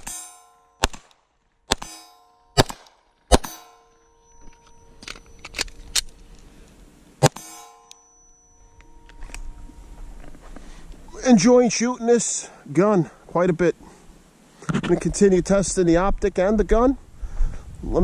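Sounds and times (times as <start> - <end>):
ring of struck steel: 0.0 - 0.9, 1.8 - 2.6, 3.3 - 10.8
pistol shots: 0.0 - 4.0.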